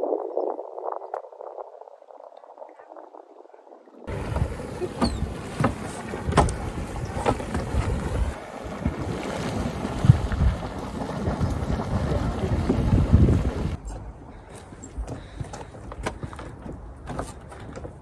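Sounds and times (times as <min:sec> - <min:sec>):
wind buffeting microphone: 0:00.0 - 0:15.4.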